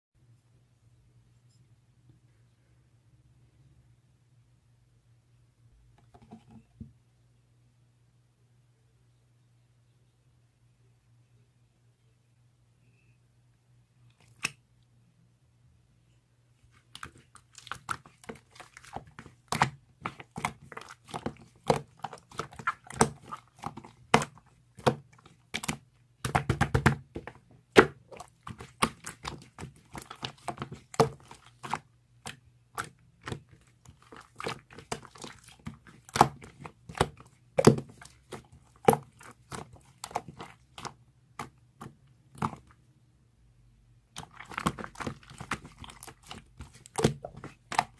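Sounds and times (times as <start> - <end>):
clay slime squished by hand: 16.6 - 42.8, 44.0 - 47.9.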